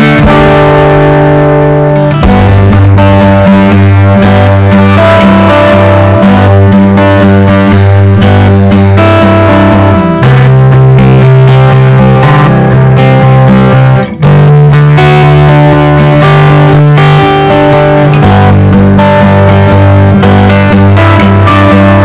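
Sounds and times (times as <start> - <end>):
guitar background music: 0.0 - 22.0
steady bass line: 0.0 - 22.0.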